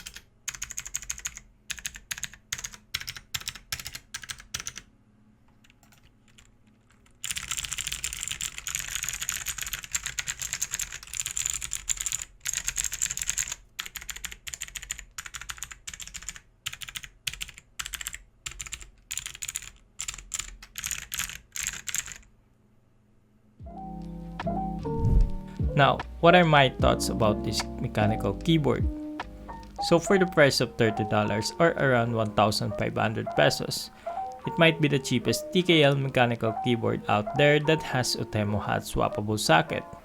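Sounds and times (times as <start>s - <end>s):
mechanical keyboard typing: 0.0s - 4.9s, 5.6s - 22.3s.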